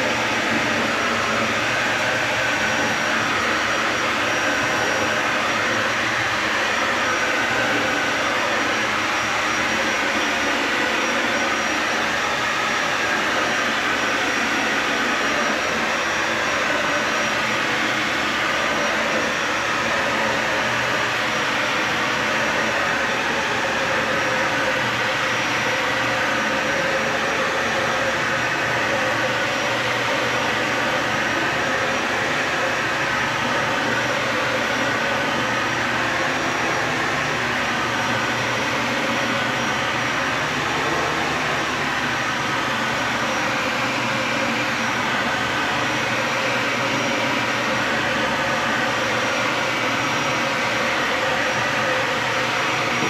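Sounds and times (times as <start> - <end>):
vacuum cleaner running on carpet: 0.0 - 53.0.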